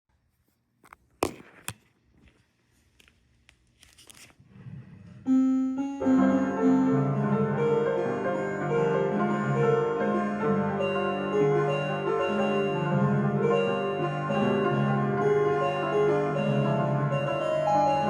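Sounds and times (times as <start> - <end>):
slow piano music: 5.3 - 18.0.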